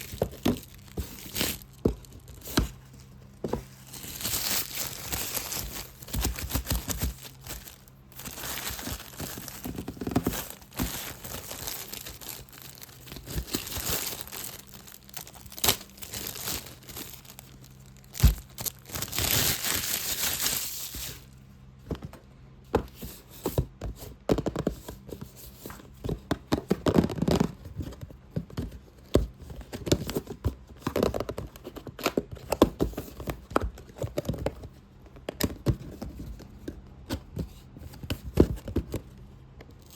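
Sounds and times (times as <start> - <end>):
scratching and crinkling on a box: 0.0 - 39.9
taps and knocks on a box: 21.8 - 39.0.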